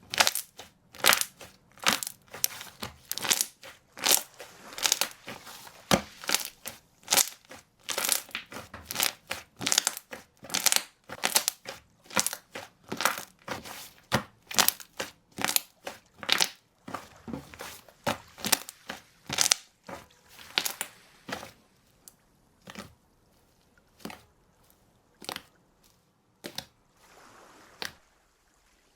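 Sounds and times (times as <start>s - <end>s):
crunchy slime being squeezed: 0.0s - 13.9s, 14.5s - 16.6s, 18.4s - 19.6s.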